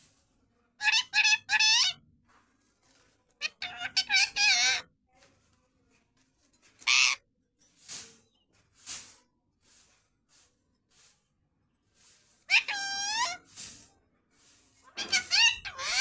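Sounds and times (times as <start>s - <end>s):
parrot calling: 0.8s - 2.0s, 3.4s - 4.9s, 6.8s - 7.2s, 12.5s - 13.4s, 15.0s - 16.0s
parrot harsh screech: 0.8s - 2.0s, 3.4s - 4.9s, 6.8s - 7.2s, 12.5s - 13.4s, 15.0s - 16.0s.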